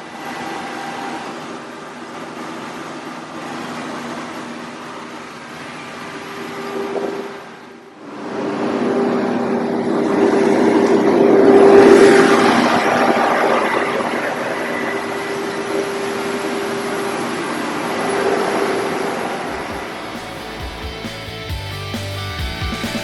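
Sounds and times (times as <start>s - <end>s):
diesel generator engine drone: 8.4s - 18.1s, 19.0s - 23.0s.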